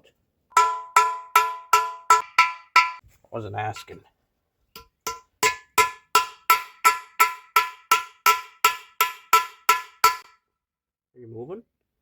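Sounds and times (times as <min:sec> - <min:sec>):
hammer blows on steel: 0:00.5 - 0:03.0, 0:04.8 - 0:10.4.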